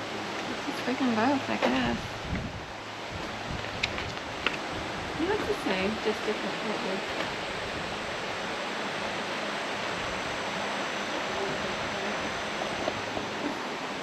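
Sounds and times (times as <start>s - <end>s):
steady rushing noise: 0.0s - 14.0s
faint voices: 11.0s - 13.8s.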